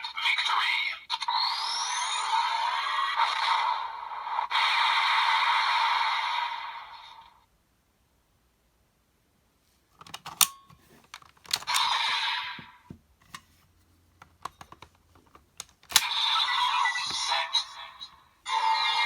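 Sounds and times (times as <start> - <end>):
toy electronic sound effects: 1.3 - 3.8, 15.9 - 19.0
toy belt plastic clicks: 10.0 - 12.0, 15.6 - 17.2.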